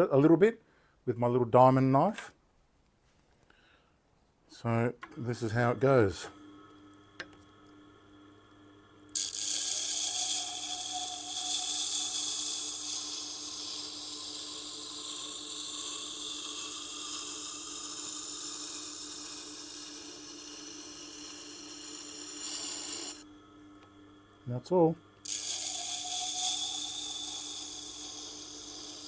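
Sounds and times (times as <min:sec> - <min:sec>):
steel grinding on wet stone: 0:09.2 - 0:23.2, 0:25.2 - 0:29.0.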